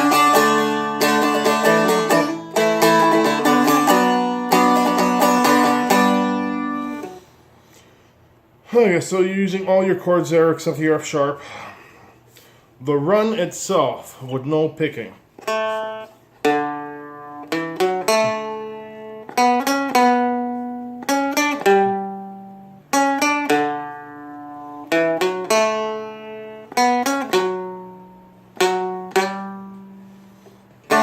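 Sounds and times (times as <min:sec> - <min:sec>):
plucked string instrument melody: 0:00.0 - 0:07.4, 0:15.4 - 0:31.0.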